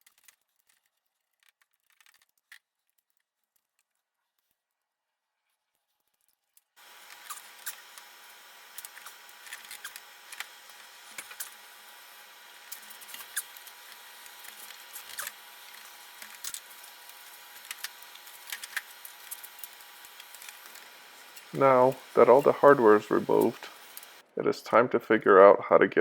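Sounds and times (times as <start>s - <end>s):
steady hiss: 6.8s - 25.1s.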